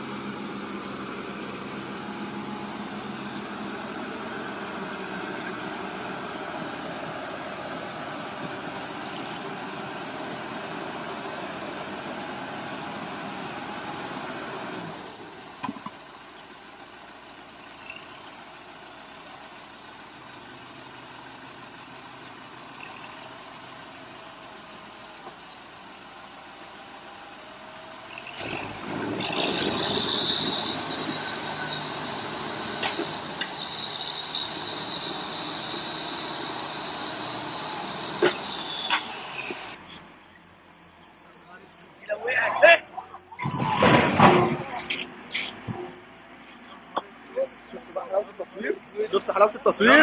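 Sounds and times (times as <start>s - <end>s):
high-pitched metallic squeal: 24.8s - 26.9s, 27.8s - 39.8s.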